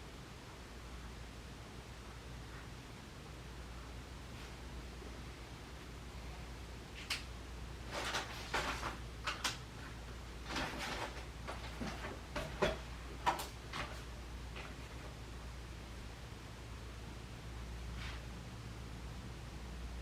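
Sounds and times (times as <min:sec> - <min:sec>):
low room hum: 0:00.0 - 0:20.0
objects knocking and clicking: 0:10.5 - 0:14.0.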